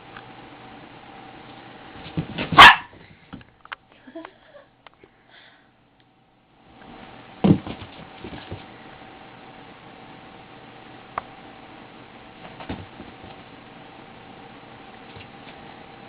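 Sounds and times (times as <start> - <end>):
small dog barking: 2.5 - 3.0.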